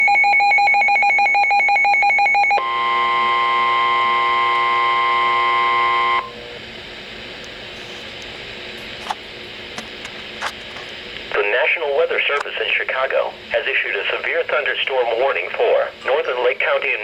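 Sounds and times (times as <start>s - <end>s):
steady multi-tone attention signal: 0.1s - 6.4s.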